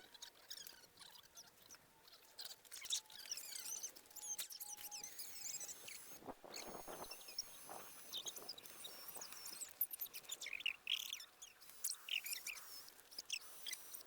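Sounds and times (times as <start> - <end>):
birds chirping: 2.9 - 14.0.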